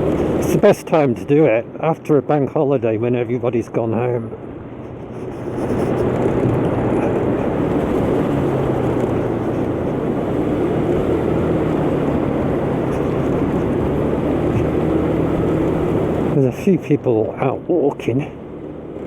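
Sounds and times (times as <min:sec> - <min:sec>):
scooter engine running: 0:00.0 - 0:00.4, 0:04.5 - 0:16.4
wind and road noise: 0:00.0 - 0:19.0.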